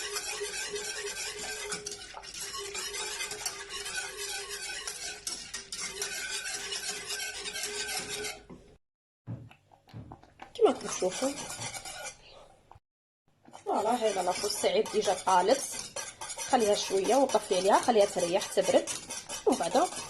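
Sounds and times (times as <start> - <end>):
utensil stirring sauce in pan: 0.0 - 8.8, 9.5 - 12.7, 13.4 - 20.0.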